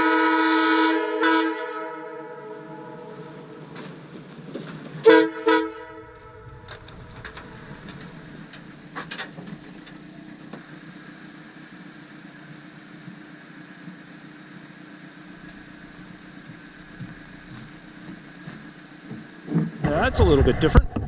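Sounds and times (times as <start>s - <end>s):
mechanical running hum: 2.0s - 21.0s.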